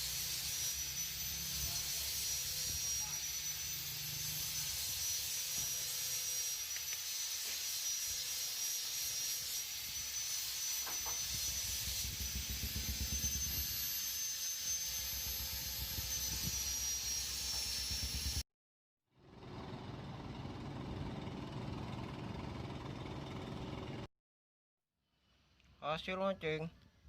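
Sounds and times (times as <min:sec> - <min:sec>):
insects droning shrilly: 0:00.0 - 0:18.4.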